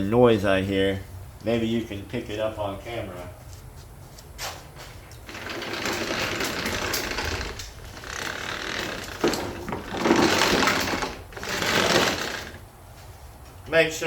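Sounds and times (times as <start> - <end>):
mower wheels rattling: 5.0 - 12.7.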